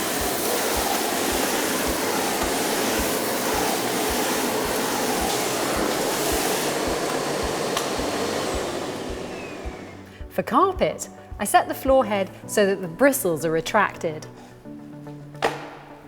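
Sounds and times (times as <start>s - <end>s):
vacuum cleaner running: 0.0s - 10.3s.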